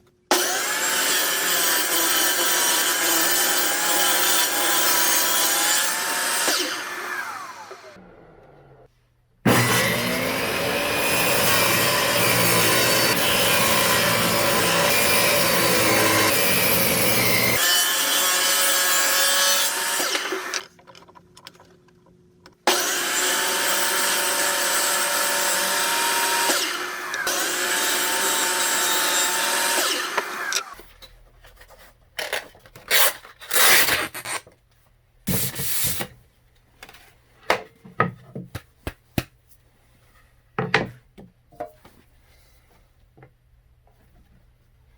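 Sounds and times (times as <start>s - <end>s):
power saw cutting wood: 0.3s - 8.8s, 9.5s - 20.7s, 22.6s - 30.8s.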